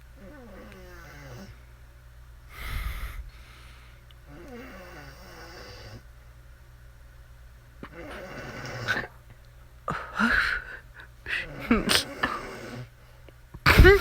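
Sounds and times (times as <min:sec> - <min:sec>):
person snoring: 0:07.8 - 0:09.2, 0:09.9 - 0:12.9.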